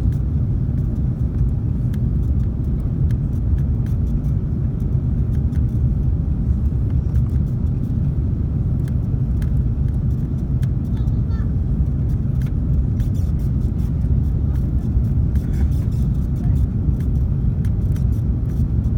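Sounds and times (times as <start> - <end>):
airliner cabin rumble: 0.0 - 18.9.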